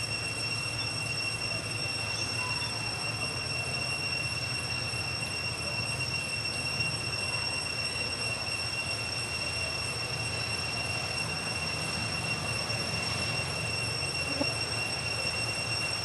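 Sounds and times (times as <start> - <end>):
insects droning: 0.0 - 16.0
faint short chirp: 14.1 - 14.6.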